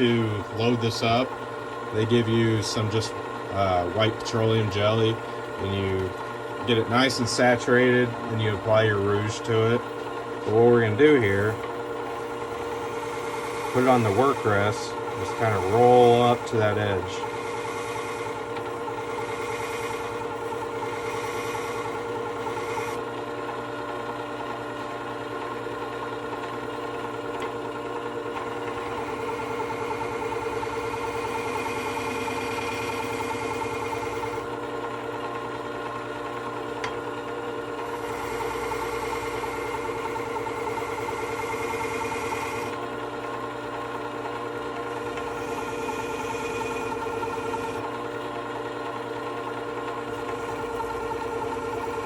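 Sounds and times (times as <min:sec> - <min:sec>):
sharpener motor humming: 0:00.0 - 0:52.0
blade hissing on honing pad: 0:12.7 - 0:20.2, 0:20.8 - 0:23.0, 0:37.8 - 0:42.8.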